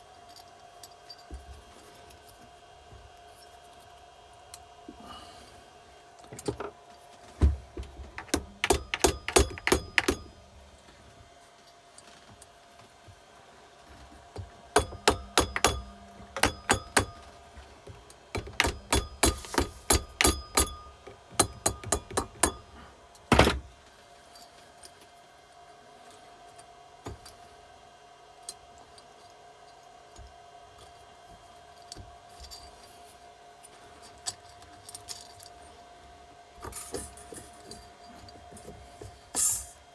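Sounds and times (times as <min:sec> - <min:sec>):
metallic clicks from hand tools: 0:08.2 - 0:10.3, 0:14.8 - 0:17.3, 0:18.4 - 0:20.8.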